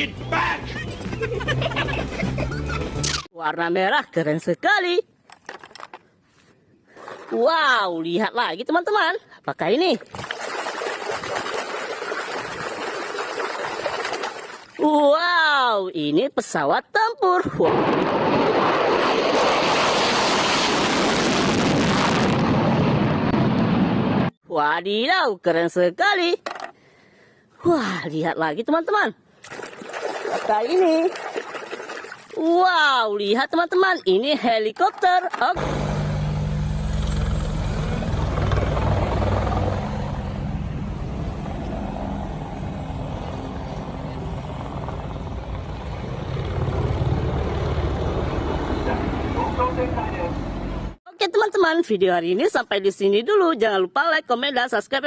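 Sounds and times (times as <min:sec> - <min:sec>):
helicopter rotor chop: 0:35.5 - 0:51.0
helicopter engine drone: 0:35.6 - 0:51.0.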